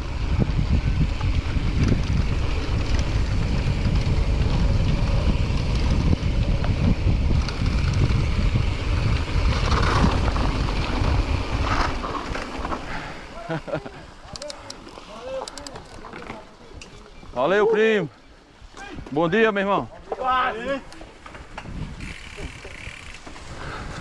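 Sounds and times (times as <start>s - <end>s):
wind buffeting microphone: 0.0s - 13.4s, 21.4s - 24.0s.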